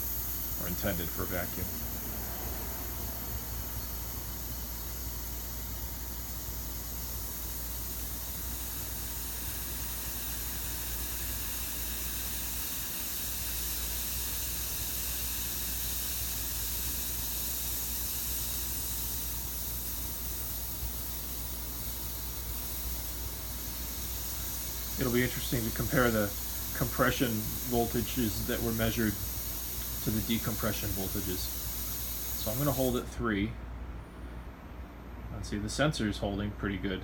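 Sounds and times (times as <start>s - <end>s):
air hissing through release valve: 0.0s - 33.1s.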